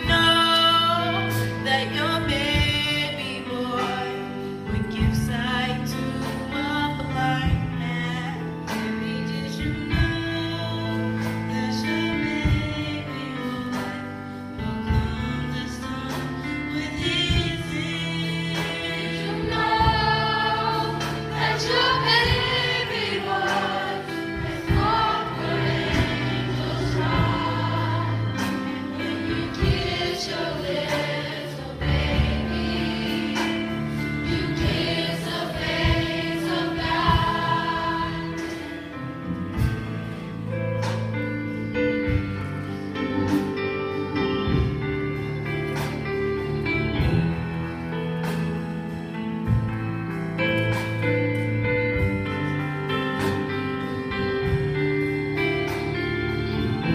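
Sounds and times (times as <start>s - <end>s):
instrumental accompaniment: 0.0s - 56.9s
gospel choir singing: 14.6s - 41.0s, 53.2s - 56.9s.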